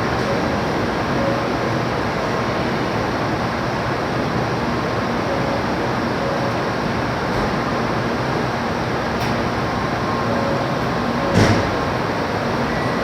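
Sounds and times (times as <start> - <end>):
train ventilation rushing hum: 0.0 - 13.0.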